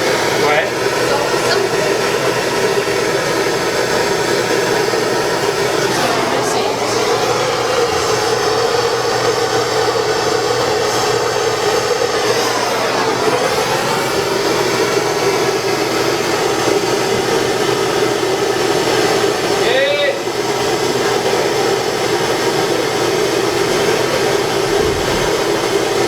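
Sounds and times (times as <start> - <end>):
propane torch hissing: 0.0 - 26.0.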